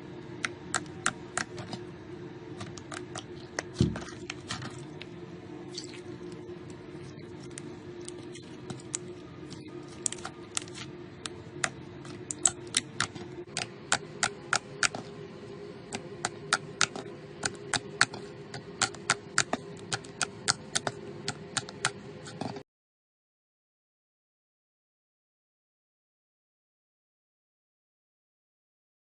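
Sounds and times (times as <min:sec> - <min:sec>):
low hum: 0:00.0 - 0:22.6.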